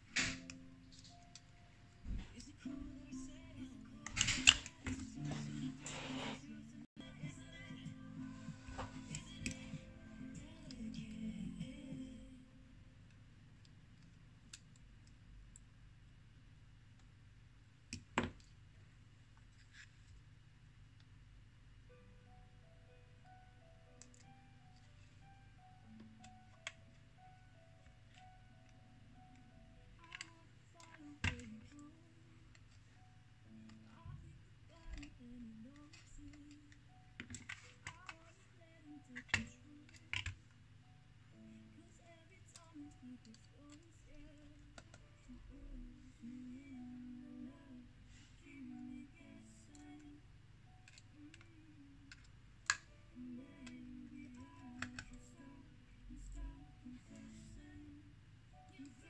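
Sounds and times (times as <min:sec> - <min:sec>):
soft background music: 0:00.0 - 0:13.6, 0:21.3 - 0:59.0
low steady hum: 0:00.0 - 0:59.0.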